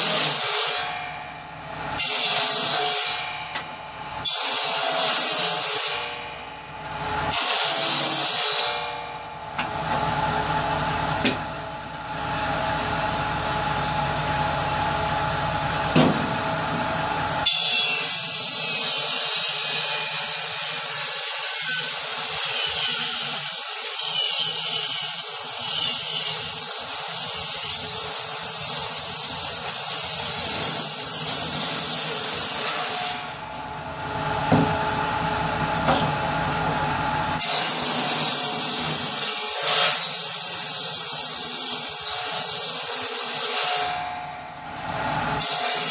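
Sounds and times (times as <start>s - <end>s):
saw cutting through wood: 0.0s - 1.1s, 1.9s - 3.4s, 4.2s - 9.0s, 17.4s - 35.0s, 37.4s - 44.1s, 45.4s - 45.9s
power saw running: 1.7s - 8.8s, 9.6s - 44.0s.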